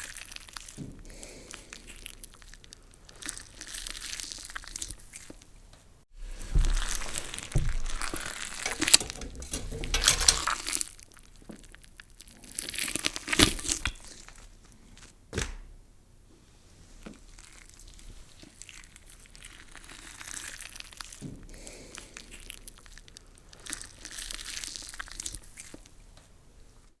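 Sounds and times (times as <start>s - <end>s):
slime squishing and crackling: 22.2s - 25.9s.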